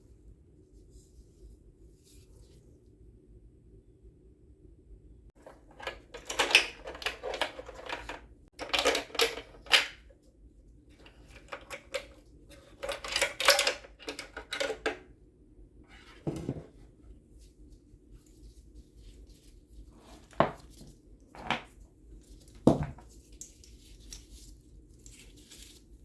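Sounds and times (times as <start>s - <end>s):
hard parts clicking and rattling: 5.4s - 10.1s, 11.0s - 15.0s.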